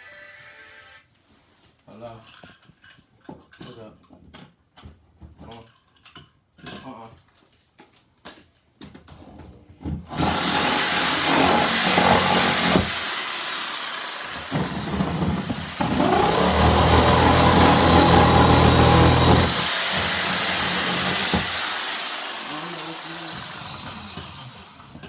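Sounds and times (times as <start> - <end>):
power tool cutting with high whine: 10.1 - 25.0.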